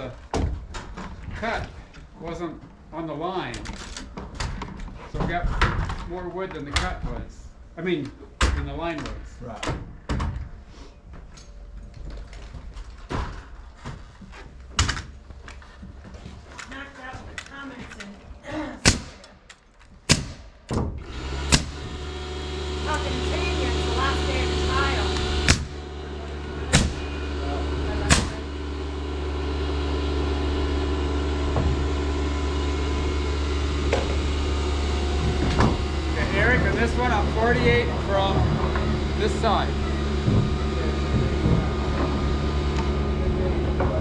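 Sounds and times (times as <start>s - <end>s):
sharp knock: 20.1s - 20.4s
engine humming steadily: 21.0s - 44.0s
timber knocking on wooden framing: 39.8s - 43.0s.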